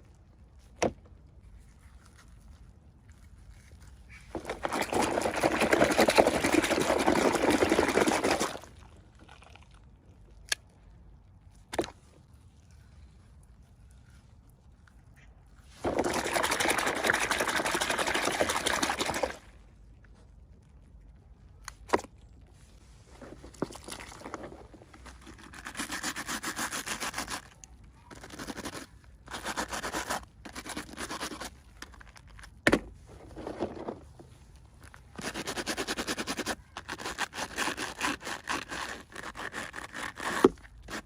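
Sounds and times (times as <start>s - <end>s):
packaging rustling and scraping: 30.5s - 35.6s.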